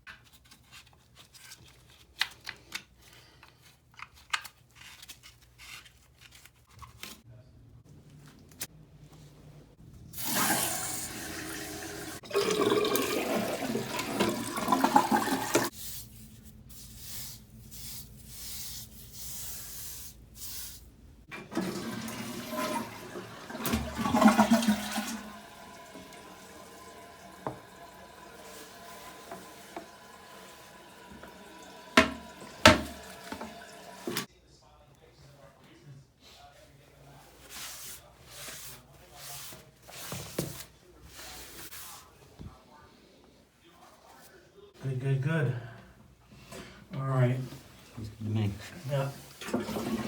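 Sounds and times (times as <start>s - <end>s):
water rushing through plumbing: 10.2s - 15.7s, 21.3s - 34.3s, 48.9s - 50.0s.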